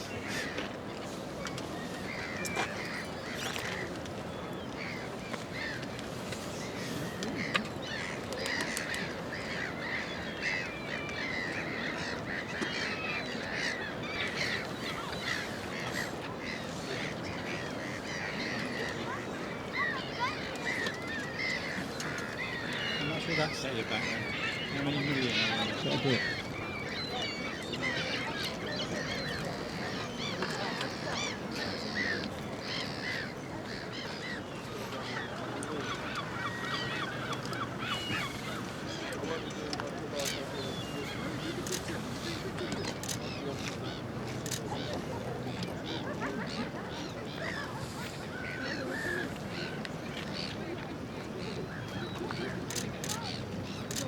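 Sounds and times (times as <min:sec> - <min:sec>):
flock of birds calling: 0:00.0 - 0:54.0
outdoor background noise: 0:00.0 - 0:54.0.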